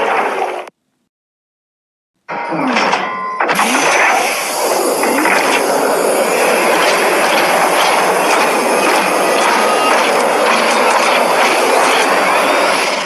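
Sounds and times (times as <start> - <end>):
mechanical start: 3.4 - 13.0
low sweeping tones: 3.5 - 13.0.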